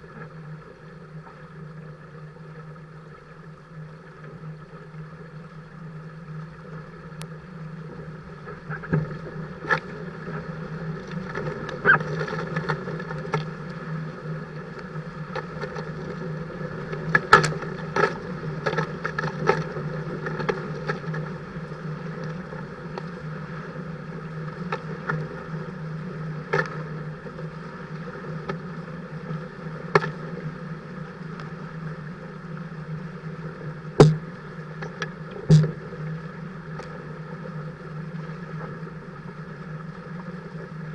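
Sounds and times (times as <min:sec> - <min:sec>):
rush of wind and water: 0:00.0 - 0:40.9
sharp knocks and slaps: 0:34.0 - 0:34.2.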